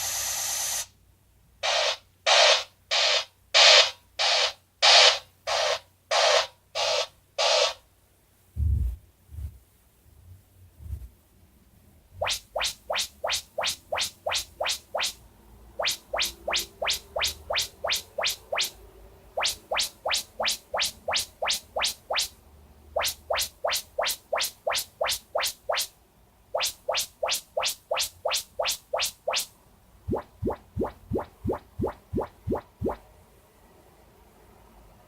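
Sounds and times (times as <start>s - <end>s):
fast rising test chirps: 12.2s - 25.9s, 26.5s - 29.5s, 30.1s - 33.0s.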